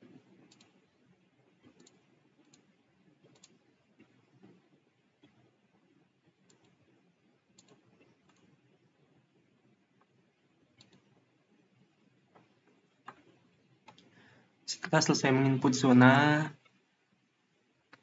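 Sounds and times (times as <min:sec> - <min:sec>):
low room hiss: 0:00.0 - 0:18.0
faint computer mouse clicks: 0:00.5 - 0:00.8, 0:01.6 - 0:04.6, 0:06.5 - 0:06.8, 0:07.6 - 0:08.5, 0:10.8 - 0:11.1, 0:12.4 - 0:14.1.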